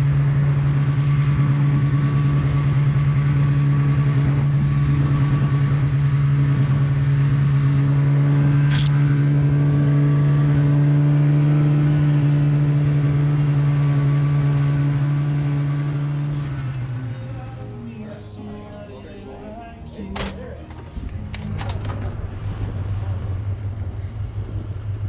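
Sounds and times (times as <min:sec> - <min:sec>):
snowmobile engine running: 0:00.0 - 0:25.0
sharp click: 0:08.7 - 0:09.0.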